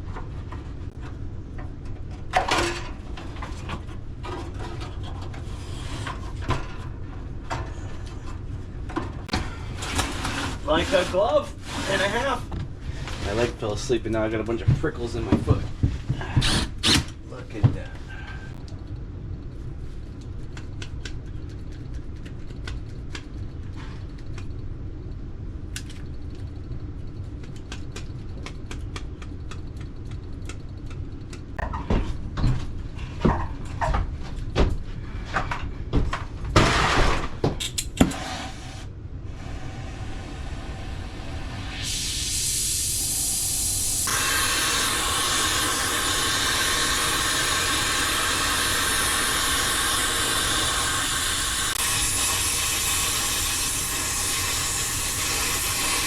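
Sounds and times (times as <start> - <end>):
gas hissing: 9.6 - 14.0, 37.6 - 56.0
steady low rumble: 17.2 - 36.6, 38.9 - 56.0.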